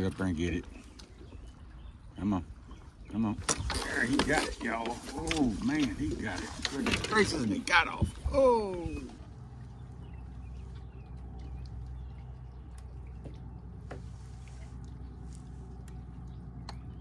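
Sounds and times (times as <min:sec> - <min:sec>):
steady low hum: 0:00.0 - 0:17.0
water dripping: 0:08.6 - 0:13.9.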